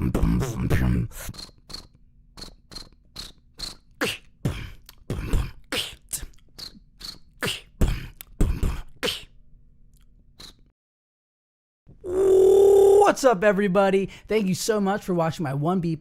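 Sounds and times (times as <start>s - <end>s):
person beatboxing: 0.0s - 9.3s.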